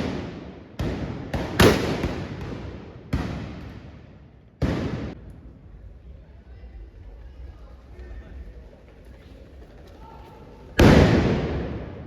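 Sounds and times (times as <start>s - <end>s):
blunderbuss blasts echoing: 0.0s - 5.3s, 10.8s - 12.0s.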